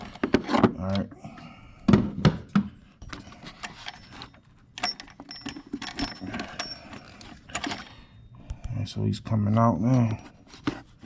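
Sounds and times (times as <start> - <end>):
metal clinks of tool and bolt: 3.6 - 7.9.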